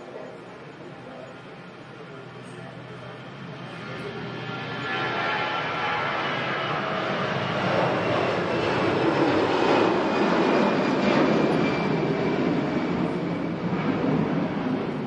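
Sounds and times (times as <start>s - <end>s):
jet engines rushing past: 1.4s - 15.0s.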